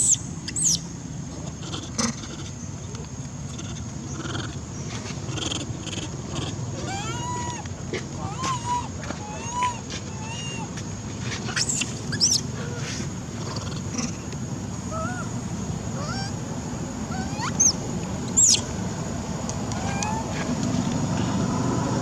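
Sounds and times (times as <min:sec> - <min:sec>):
low background rumble: 0:00.0 - 0:22.0
monkeys squeaking and cooing: 0:05.3 - 0:10.8, 0:11.5 - 0:14.2, 0:14.9 - 0:15.4, 0:16.0 - 0:16.4, 0:17.1 - 0:18.8, 0:19.7 - 0:20.5.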